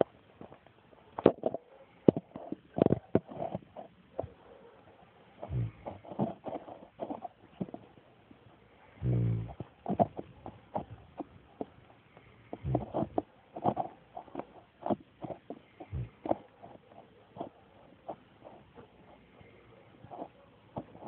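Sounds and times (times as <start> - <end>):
dog snoring: 5.4 - 7.2, 8.8 - 10.1.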